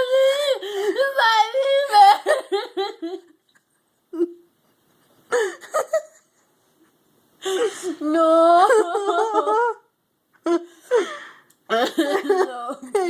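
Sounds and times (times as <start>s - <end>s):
girl wailing and whimpering: 0.0s - 3.0s, 7.6s - 9.9s.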